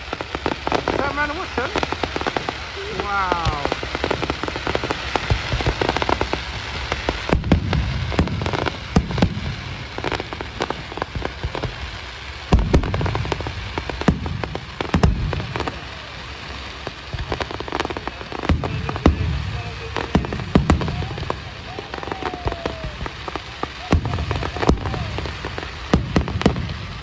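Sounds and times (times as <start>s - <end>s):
fireworks bangs and crackling: 0.0s - 27.0s
low firework booms: 0.0s - 27.0s.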